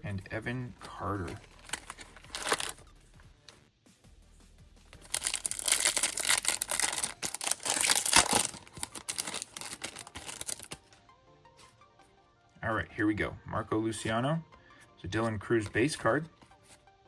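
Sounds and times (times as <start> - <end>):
foil wrapper crinkling and tearing: 0.9 - 2.8, 5.0 - 10.8.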